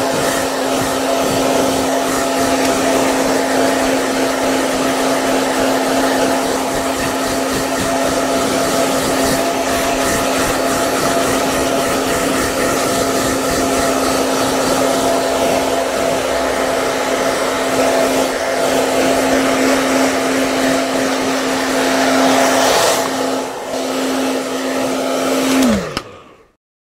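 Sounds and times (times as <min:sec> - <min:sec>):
hair dryer running: 0:00.0 - 0:26.6.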